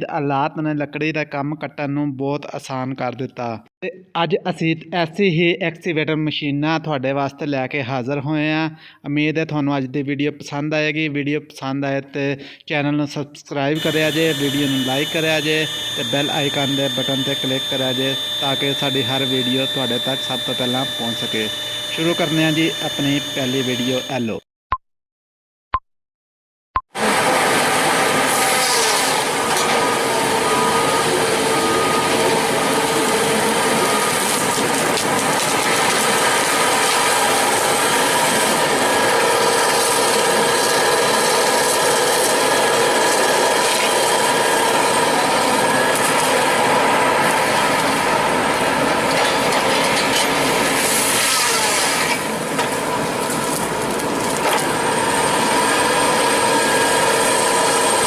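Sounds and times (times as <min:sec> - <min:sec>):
heavy machine engine whining: 0:13.8 - 0:24.4, 0:27.0 - 0:58.0.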